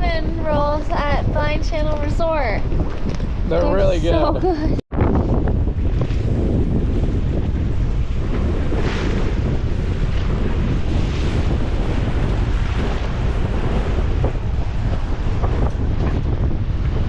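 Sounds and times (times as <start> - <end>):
heavy low rumble: 0.0 - 17.0
wind buffeting microphone: 0.0 - 17.0
waves washing against hull: 4.5 - 17.0.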